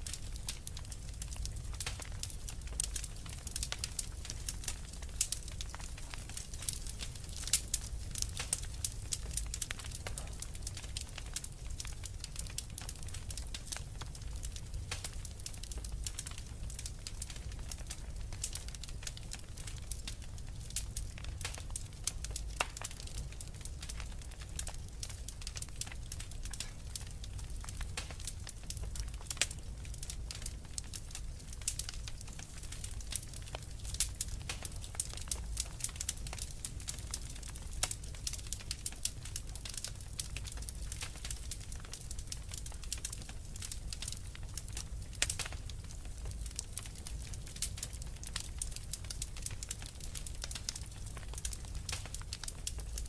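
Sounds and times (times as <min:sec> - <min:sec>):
fire crackling: 0:00.0 - 0:53.0.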